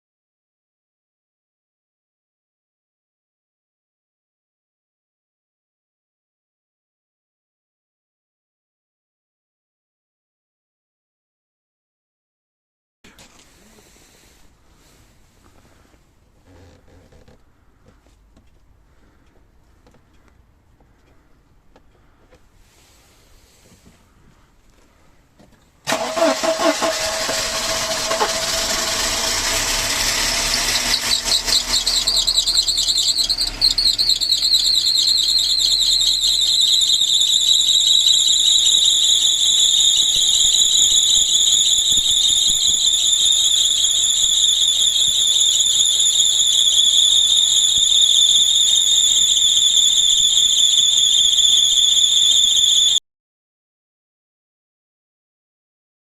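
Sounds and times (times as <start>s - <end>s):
car engine running: 25.9s - 51.4s
belt squealing: 25.9s - 53.0s.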